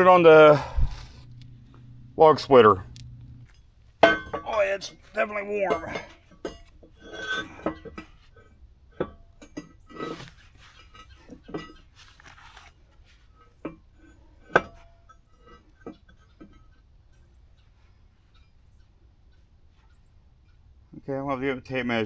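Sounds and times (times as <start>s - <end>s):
metal scraping: 0.0s - 18.8s
steel clinking and knocking: 1.2s - 17.4s.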